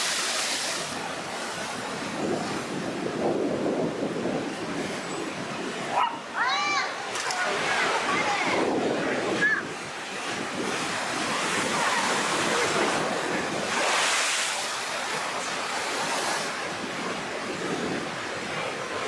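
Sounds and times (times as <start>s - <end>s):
surf breaking: 6.5s - 19.0s.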